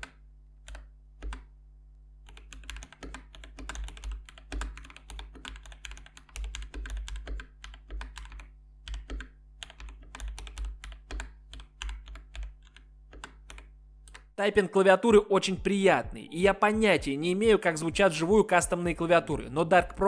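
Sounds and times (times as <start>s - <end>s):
fast mechanical keyboard typing: 0.0s - 1.5s, 2.3s - 14.3s.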